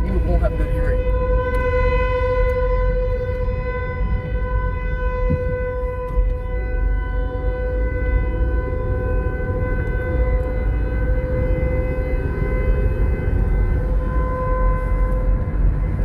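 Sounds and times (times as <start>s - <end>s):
low rumble: 0.0s - 6.8s
steady warning siren tone: 0.0s - 16.0s.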